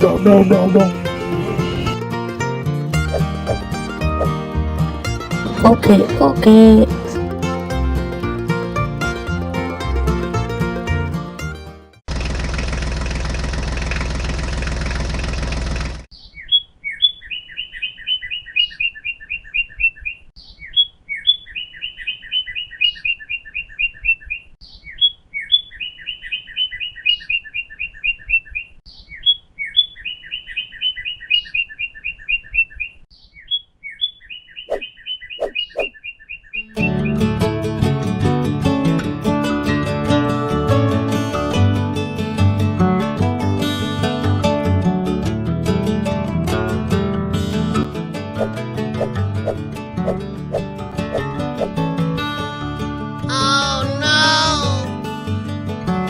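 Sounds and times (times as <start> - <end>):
bird chirping: 16.1 - 36.8.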